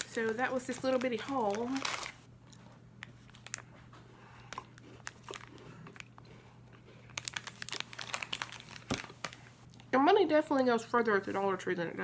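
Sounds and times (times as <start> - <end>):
bags crinkling: 0.0 - 2.3, 3.0 - 3.7, 4.7 - 6.1, 7.1 - 9.6
low steady hum: 0.0 - 12.0.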